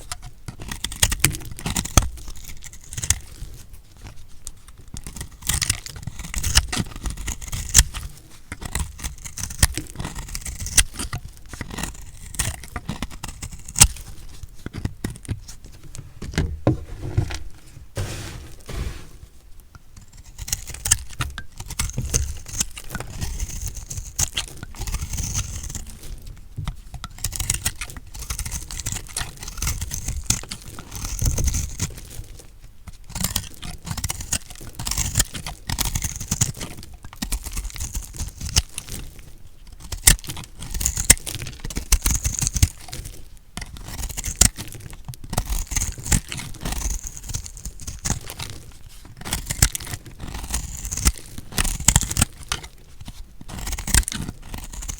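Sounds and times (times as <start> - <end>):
knife cutting through soap: 5.0 - 19.4, 20.0 - 32.2, 43.6 - 54.9.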